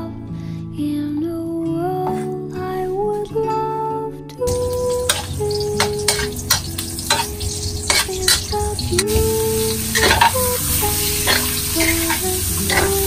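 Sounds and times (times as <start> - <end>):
oil sizzling in a pan: 4.5 - 13.0
spatula scraping and knocking pan: 5.1 - 8.6, 9.9 - 10.5.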